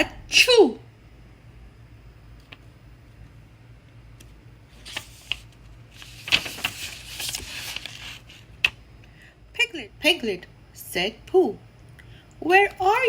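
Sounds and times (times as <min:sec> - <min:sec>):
paper page rustling: 0:04.7 - 0:08.5.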